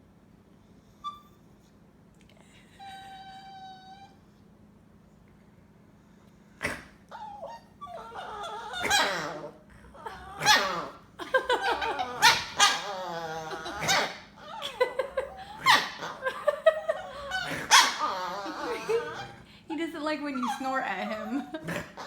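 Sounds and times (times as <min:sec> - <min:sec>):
small dog squealing and whining: 0:01.0 - 0:01.4, 0:02.8 - 0:04.2, 0:06.6 - 0:11.0, 0:11.6 - 0:19.4.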